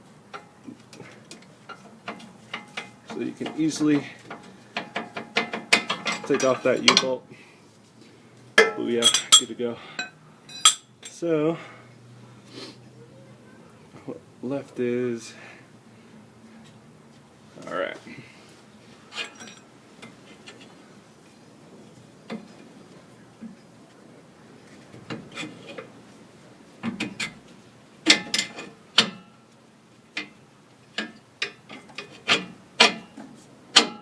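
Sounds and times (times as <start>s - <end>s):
metal parts clicking and clanking: 0.3s - 7.2s, 8.6s - 11.2s, 19.1s - 20.7s, 26.9s - 29.5s, 30.1s - 34.0s.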